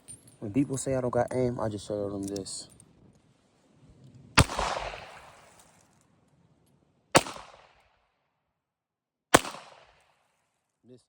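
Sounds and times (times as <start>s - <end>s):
gunshot: 4.4s - 5.5s, 7.2s - 7.8s, 9.3s - 10.2s
gunshot echo: 4.4s - 5.6s, 7.2s - 7.9s, 9.3s - 10.2s.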